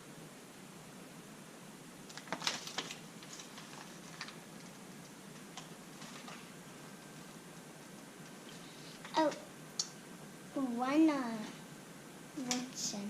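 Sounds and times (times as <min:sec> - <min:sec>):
plastic toys and packaging clicking: 0:02.1 - 0:06.4.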